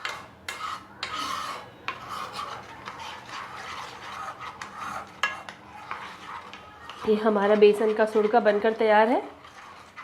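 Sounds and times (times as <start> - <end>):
utensil scraping cooking pan: 0.0 - 10.0.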